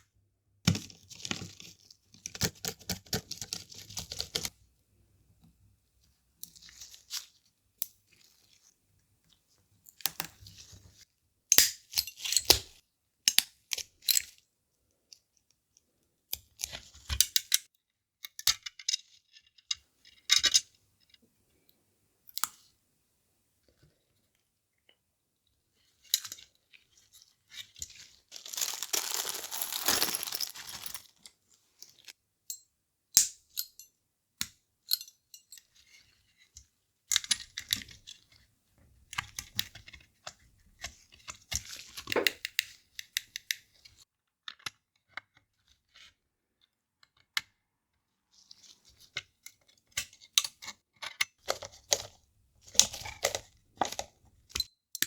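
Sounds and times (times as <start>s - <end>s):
plastic parts clicking and tapping: 2.2s - 4.5s, 50.4s - 55.0s
scratchy rustle: 28.0s - 31.1s.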